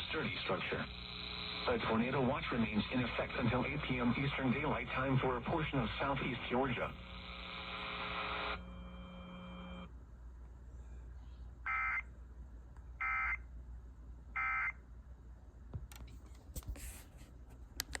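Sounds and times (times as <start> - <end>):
steady hum: 0.0 - 11.6.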